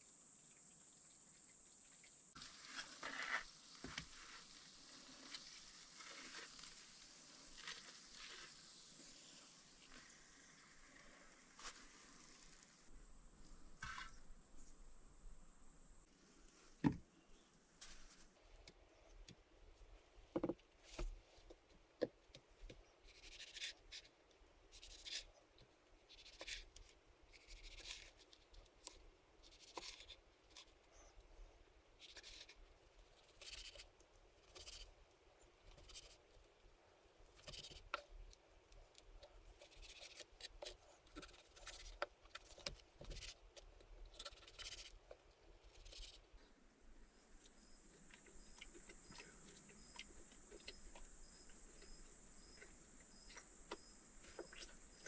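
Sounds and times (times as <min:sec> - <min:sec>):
steady high hiss: 0:46.4 - 0:55.0.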